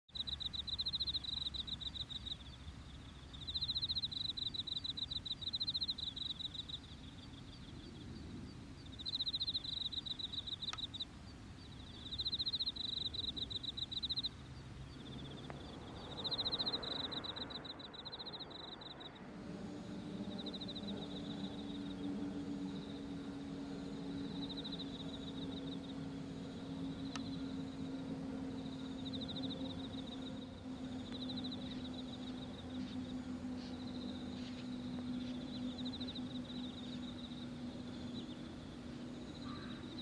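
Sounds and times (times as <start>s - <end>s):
high-pitched pulsing chirps: 0.1s - 7.6s, 8.9s - 38.5s
low hum with held tones: 0.1s - 40.0s
low outdoor rumble: 0.1s - 40.0s.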